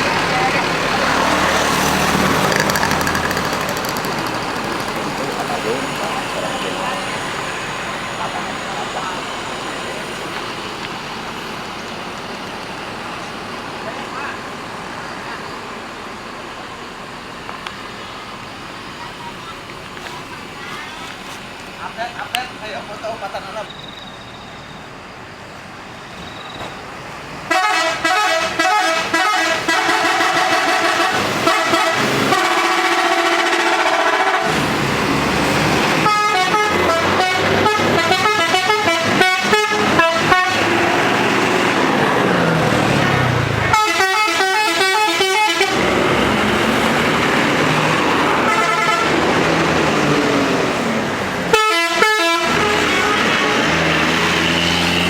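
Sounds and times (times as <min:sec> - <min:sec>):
multi-tone bus horns warbling: 0:27.5 - 0:55.0.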